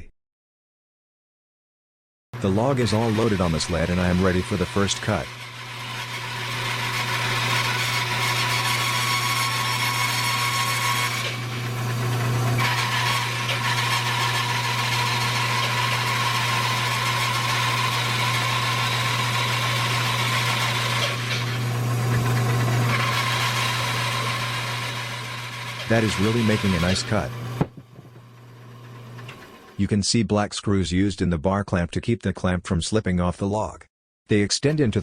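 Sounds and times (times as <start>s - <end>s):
bandsaw motor hum: 2.4s - 29.8s.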